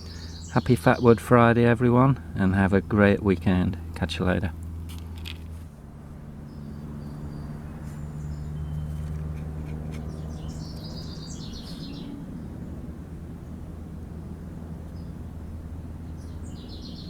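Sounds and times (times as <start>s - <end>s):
small birds calling: 0.0s - 1.3s, 6.4s - 12.8s, 14.9s - 17.0s
steady low hum: 0.0s - 17.0s.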